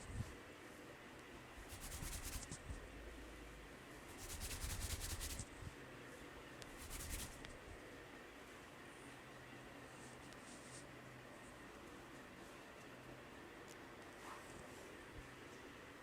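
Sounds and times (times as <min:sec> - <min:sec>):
hands rubbing in massage: 0:01.7 - 0:02.8, 0:04.1 - 0:05.5, 0:06.7 - 0:07.6.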